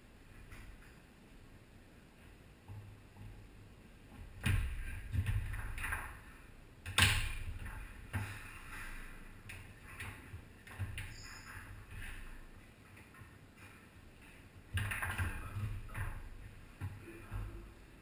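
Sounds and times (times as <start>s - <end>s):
foosball knocks and clacks: 4.1s - 6.3s, 14.6s - 17.6s.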